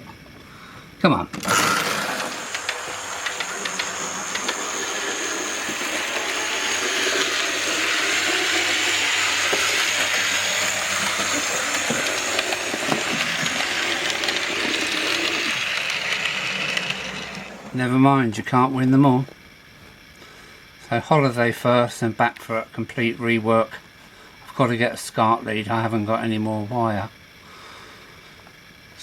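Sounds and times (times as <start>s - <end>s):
wheels clicking over track: 1.3s - 17.8s
model train motor whining: 1.3s - 20.8s.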